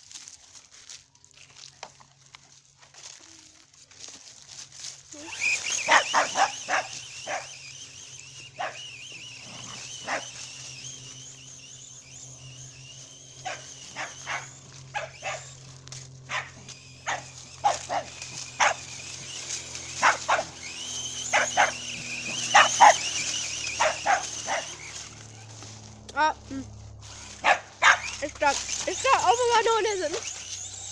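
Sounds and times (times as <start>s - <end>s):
high wavering whine: 5.2s - 30.9s
dog barking: 5.9s - 7.6s, 8.6s - 8.8s, 10.0s - 10.3s, 13.4s - 15.5s, 16.3s - 18.9s, 20.0s - 20.6s, 21.3s - 23.1s, 23.8s - 24.7s, 27.4s - 28.2s.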